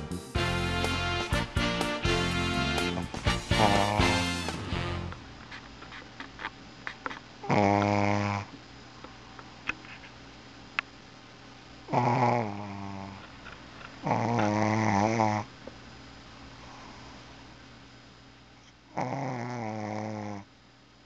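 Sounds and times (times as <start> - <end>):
pet snoring: 2.8 - 5.1, 7.4 - 8.6, 11.9 - 13.2, 14.0 - 15.5, 19.0 - 20.5.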